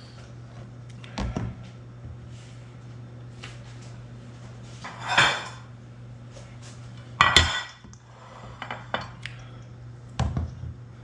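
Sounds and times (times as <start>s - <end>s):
steady low hum: 0.0s - 11.0s
dishes clattering: 4.9s - 5.6s, 7.2s - 7.8s
cookware clanging: 7.2s - 7.8s.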